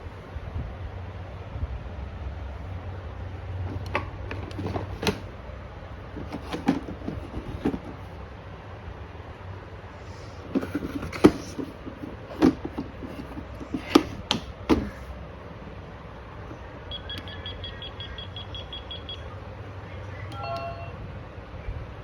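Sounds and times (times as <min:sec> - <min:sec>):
high electronic beeps: 0:16.9 - 0:19.3.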